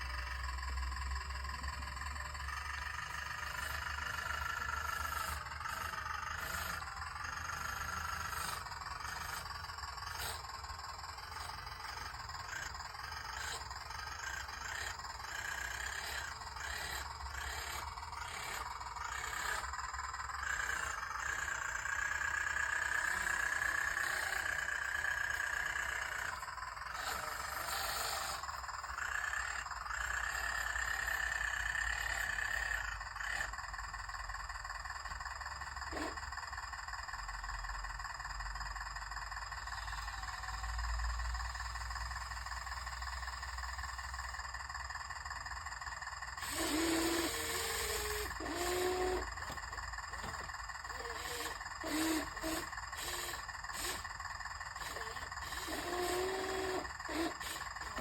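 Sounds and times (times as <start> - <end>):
small electric motors whining: 0.0 - 58.0.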